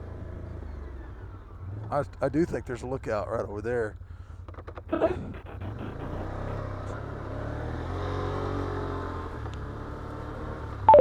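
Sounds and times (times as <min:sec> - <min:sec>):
atv engine running: 0:00.0 - 0:11.0.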